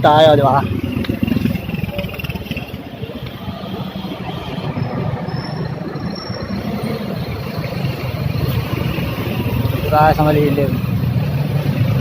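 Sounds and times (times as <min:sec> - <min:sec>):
motorcycle engine running: 0:00.0 - 0:04.0.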